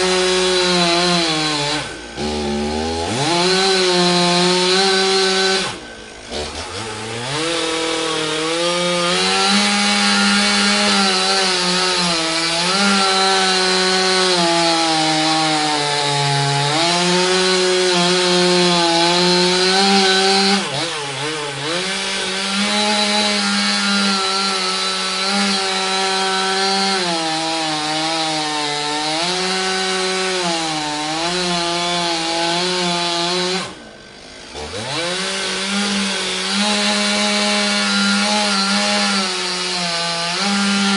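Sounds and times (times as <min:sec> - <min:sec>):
chainsaw cutting wood: 0:00.0 - 0:40.9.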